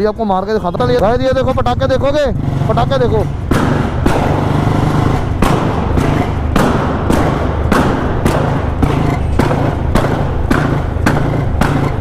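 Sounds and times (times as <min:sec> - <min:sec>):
motorcycle engine thumping: 0:00.6 - 0:12.0
exhaust backfire pops: 0:02.4 - 0:12.0.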